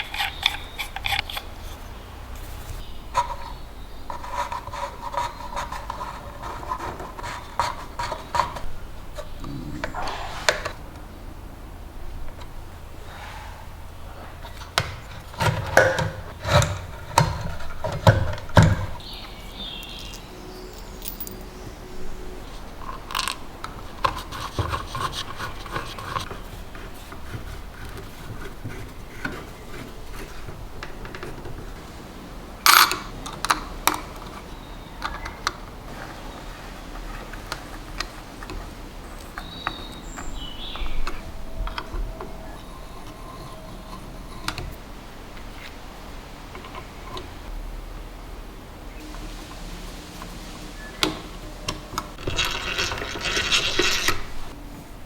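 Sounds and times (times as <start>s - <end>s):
rubbing and scraping: 0.0s - 11.0s, 13.0s - 32.2s, 49.0s - 55.0s.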